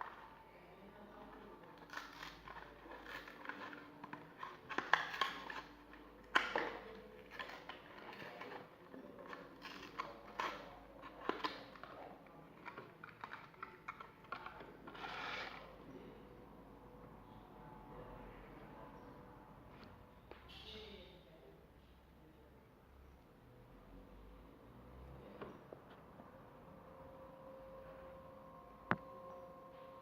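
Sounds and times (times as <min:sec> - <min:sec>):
crinkling plastic and cardboard: 0:01.0 - 0:15.7.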